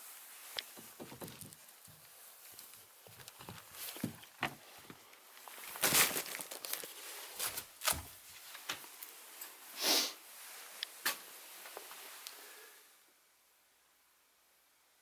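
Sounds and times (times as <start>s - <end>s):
knocks and rustling: 0.6s - 2.1s, 3.0s - 5.1s
short breathy hiss: 9.7s - 10.3s, 12.0s - 13.0s.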